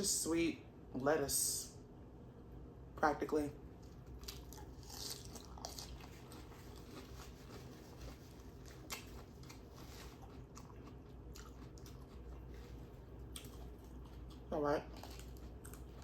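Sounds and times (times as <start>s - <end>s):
person chewing crisp lettuce: 3.8s - 16.0s.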